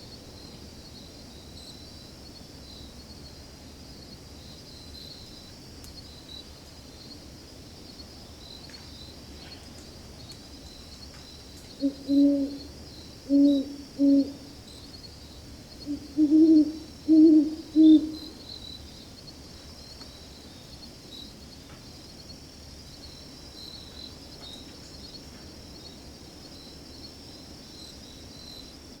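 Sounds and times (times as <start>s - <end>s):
high insect trill: 0.0s - 29.0s
owl hooting: 11.8s - 14.5s, 15.8s - 18.4s.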